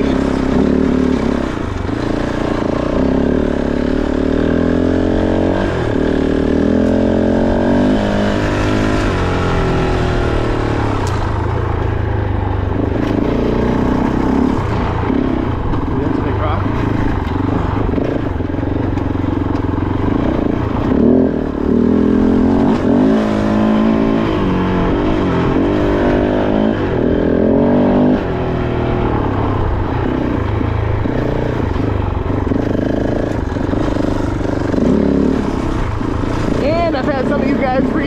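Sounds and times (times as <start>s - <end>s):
motorcycle engine revving: 0.0s - 38.0s.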